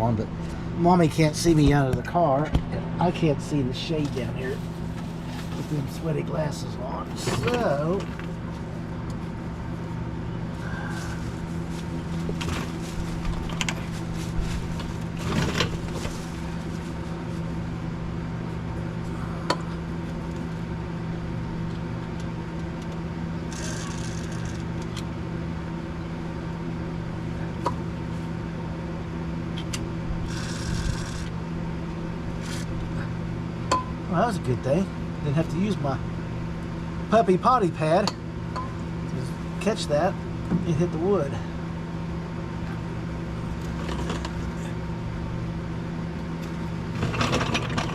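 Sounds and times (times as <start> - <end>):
mechanical hum: 0.0 - 47.9.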